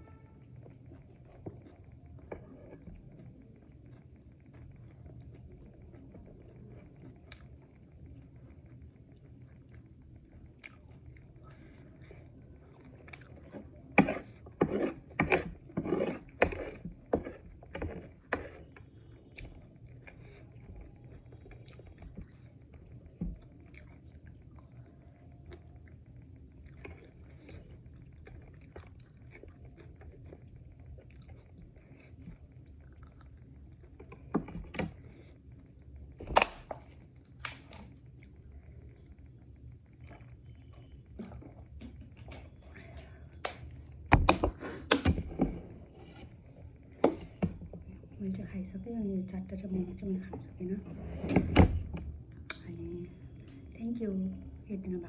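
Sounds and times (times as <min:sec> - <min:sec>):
faint low hum: 0:00.0 - 0:55.0
quiet chewing: 0:00.3 - 0:50.8, 0:51.9 - 0:53.8.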